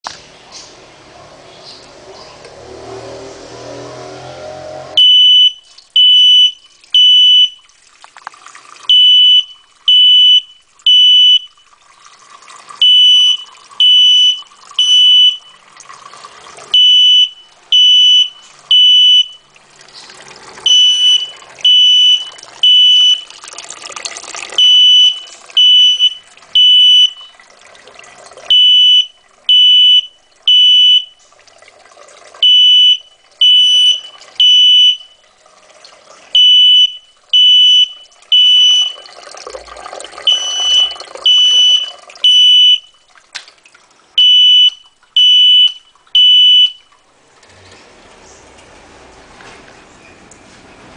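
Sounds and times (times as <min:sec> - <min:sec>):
fire alarm beeping: 0:05.0 - 0:07.6, 0:08.9 - 0:11.5, 0:12.8 - 0:15.5, 0:16.8 - 0:19.4, 0:20.7 - 0:23.2, 0:24.6 - 0:27.3, 0:28.5 - 0:31.1, 0:32.4 - 0:35.2, 0:36.4 - 0:39.0, 0:40.3 - 0:43.0, 0:44.2 - 0:46.9.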